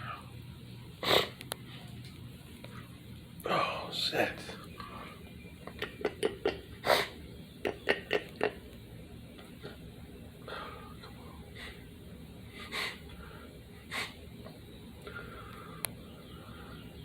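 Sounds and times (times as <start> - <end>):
person sniffing: 6.8 - 7.2, 12.6 - 13.1, 13.9 - 14.2.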